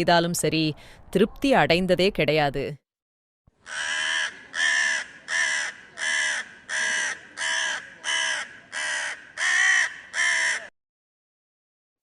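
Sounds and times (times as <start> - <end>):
crow cawing: 3.5 - 10.7.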